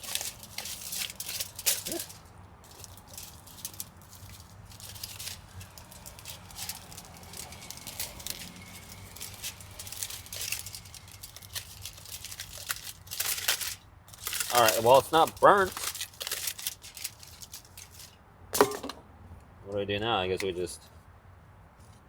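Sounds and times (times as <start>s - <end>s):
aluminium foil crinkling: 0.0s - 18.2s.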